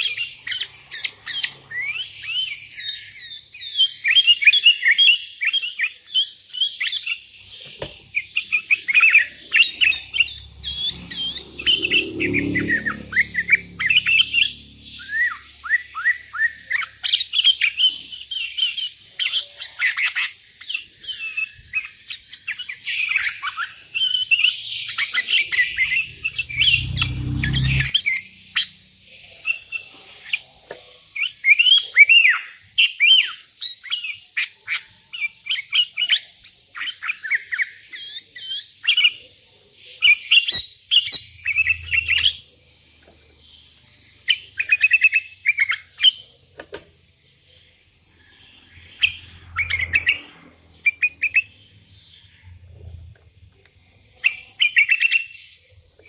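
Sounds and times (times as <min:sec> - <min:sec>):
bird singing chirps and whistles: 0:00.0 - 0:46.4, 0:47.5 - 0:56.0.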